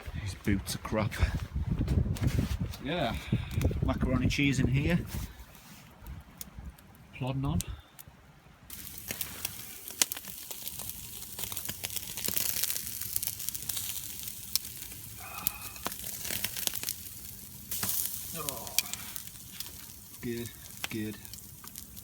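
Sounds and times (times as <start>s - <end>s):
steak sizzling in a pan: 8.7s - 22.0s.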